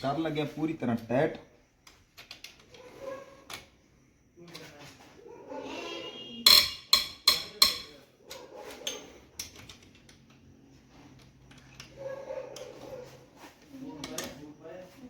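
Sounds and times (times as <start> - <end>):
tools clanking on metal: 6.5 - 10.4.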